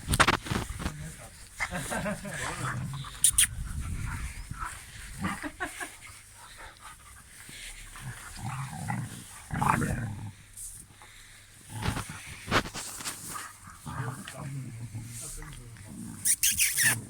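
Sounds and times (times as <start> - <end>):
dog vocalizing: 3.0 - 3.6, 16.2 - 17.0.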